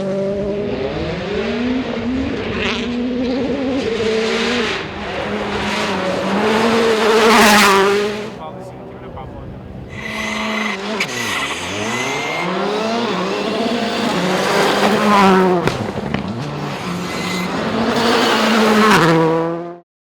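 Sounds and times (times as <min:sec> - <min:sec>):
rally car engines revving: 0:00.0 - 0:19.8
sharp cracks: 0:10.0 - 0:18.9.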